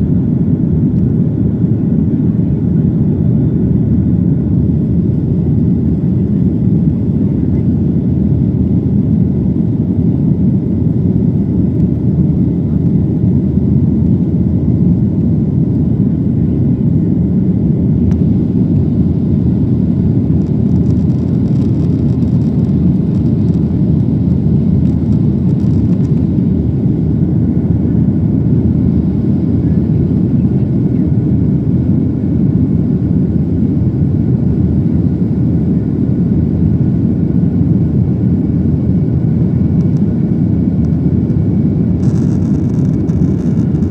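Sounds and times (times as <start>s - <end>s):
airliner cabin rumble: 0.0s - 43.9s.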